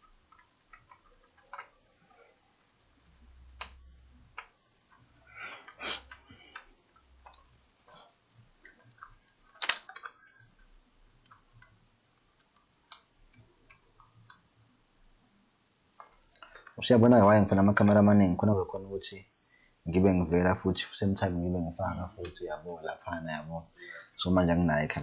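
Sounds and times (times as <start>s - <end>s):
small hard parts clicking: 0.0s - 14.5s.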